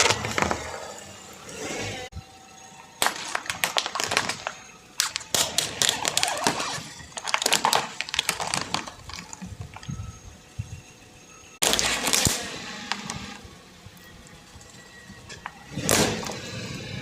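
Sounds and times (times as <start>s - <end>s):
objects crunching under car tyre: 0.0s - 2.1s, 2.8s - 10.2s, 11.6s - 13.4s.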